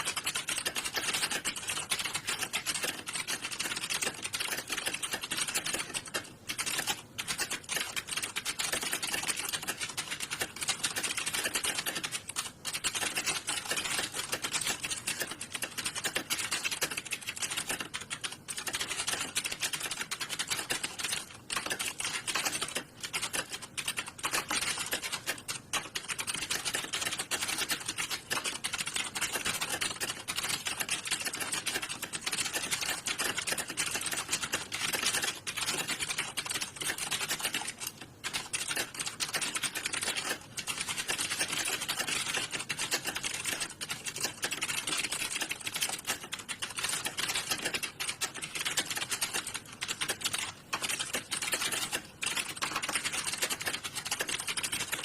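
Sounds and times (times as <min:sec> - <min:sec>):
many keyboards typing: 0:00.0 - 0:55.0.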